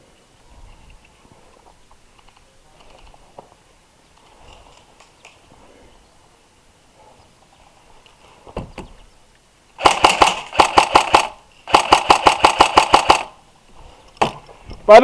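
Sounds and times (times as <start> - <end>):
airsoft rifle firing bursts: 9.8 - 13.4.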